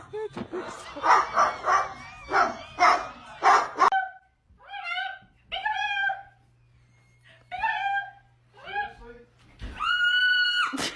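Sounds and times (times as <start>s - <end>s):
wavering whining cries: 4.6s - 9.0s.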